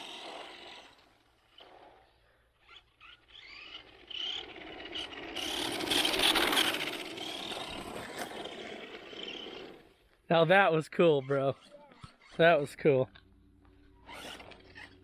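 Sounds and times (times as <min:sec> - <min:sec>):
electric motor whining: 0:00.0 - 0:09.9, 0:13.8 - 0:15.0.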